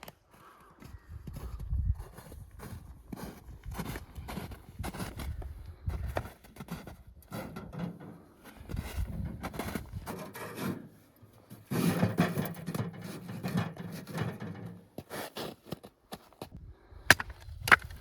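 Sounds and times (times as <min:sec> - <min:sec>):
small wood cracks: 0:17.1 - 0:18.0.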